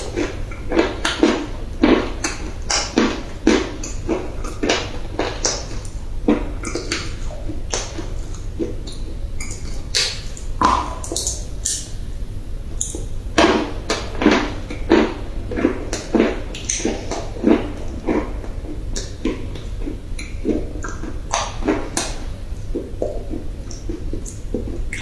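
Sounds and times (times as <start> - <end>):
steady low hum: 0.0 - 25.0.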